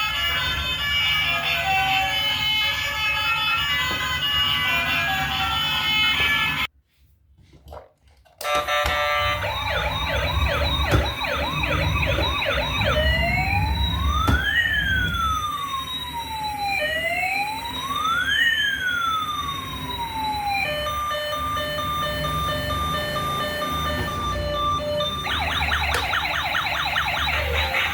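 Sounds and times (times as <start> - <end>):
toy electronic siren: 0.0 - 6.7, 8.4 - 27.9
beeping tune: 8.7 - 15.5, 20.9 - 27.9.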